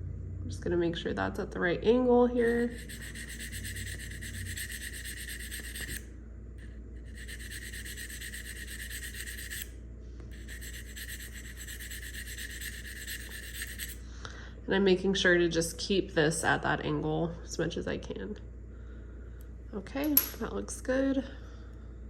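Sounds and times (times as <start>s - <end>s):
sharpening stone scraping blade: 2.4s - 6.0s, 7.1s - 9.7s, 10.3s - 14.0s.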